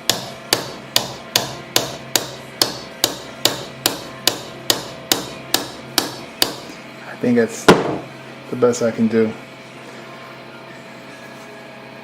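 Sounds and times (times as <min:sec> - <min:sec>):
small hammer tapping metal: 0:00.0 - 0:06.6.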